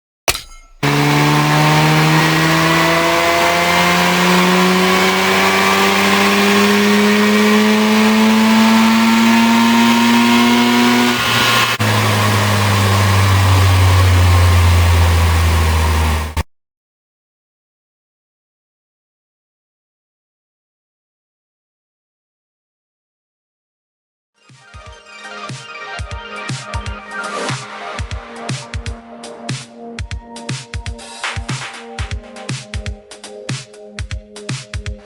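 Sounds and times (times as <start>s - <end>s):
car engine running: 0.7s - 16.4s.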